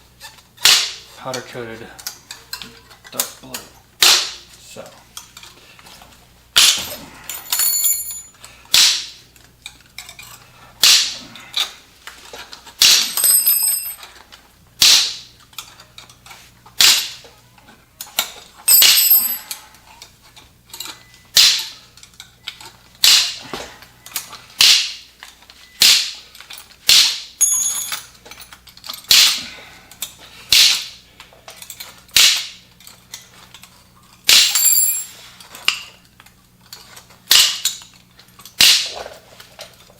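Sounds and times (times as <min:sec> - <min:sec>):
high-pitched metallic ring: 0:07.5 - 0:08.3, 0:18.7 - 0:19.5, 0:27.4 - 0:28.1, 0:34.5 - 0:35.2.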